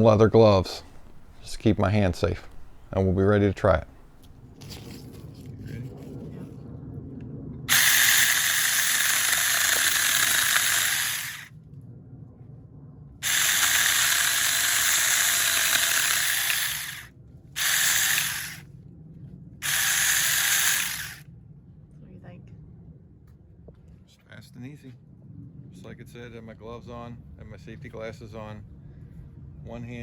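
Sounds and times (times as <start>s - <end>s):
chainsaw cutting a limb: 0.8s - 1.5s, 7.7s - 11.5s, 13.2s - 18.6s, 19.6s - 21.2s.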